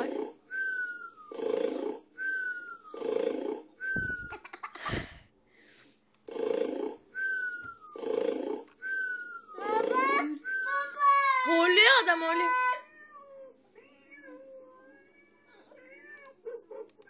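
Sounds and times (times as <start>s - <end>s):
clicks: 16.2s - 17.0s.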